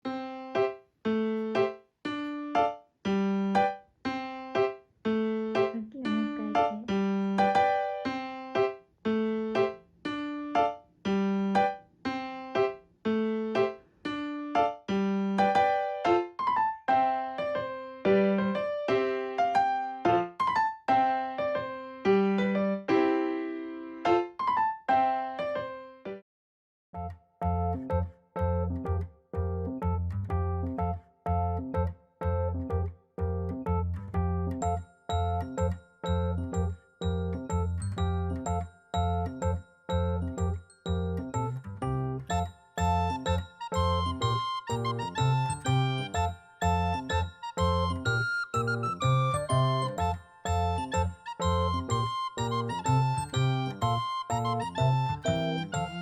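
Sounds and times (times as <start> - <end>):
bouncy keyboard music: 0.0 - 26.2, 27.0 - 56.0
light piano-like tune: 0.0 - 26.2, 27.0 - 56.0.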